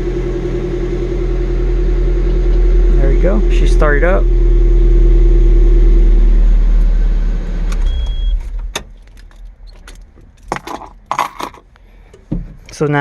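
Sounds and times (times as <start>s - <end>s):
car engine idling and winding down: 0.0s - 12.3s
keys jingling: 7.8s - 11.7s.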